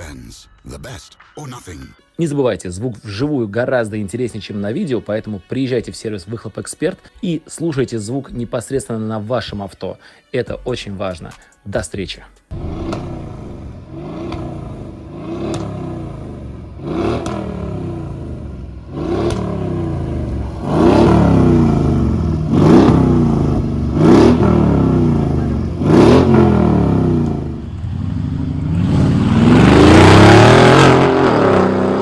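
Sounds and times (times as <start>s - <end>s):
car engine revving: 12.5s - 32.0s.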